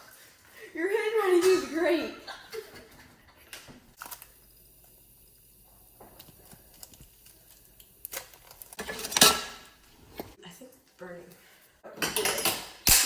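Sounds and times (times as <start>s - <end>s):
kitchen utensils clicking: 5.8s - 10.4s, 11.9s - 13.0s.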